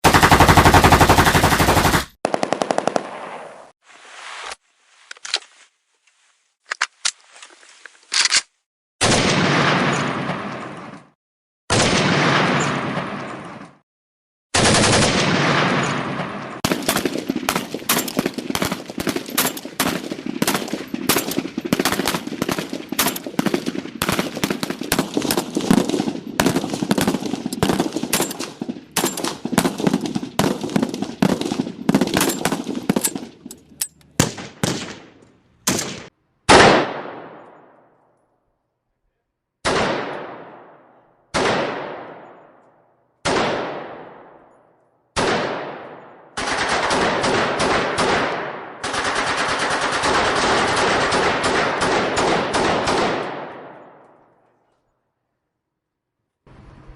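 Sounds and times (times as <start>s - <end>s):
rifle gunfire: 0.0s - 3.5s, 14.6s - 33.5s, 34.1s - 37.5s, 45.2s - 54.1s.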